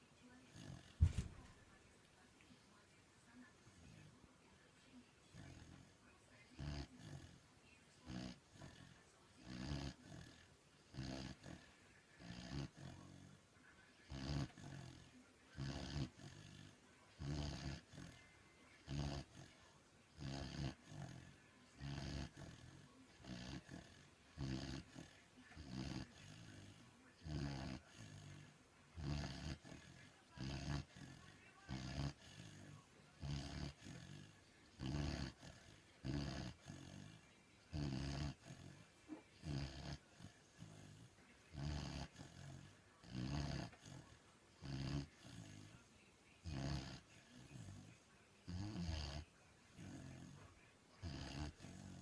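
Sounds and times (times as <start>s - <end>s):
puppy snoring: 0.4s - 1.7s, 5.3s - 52.0s.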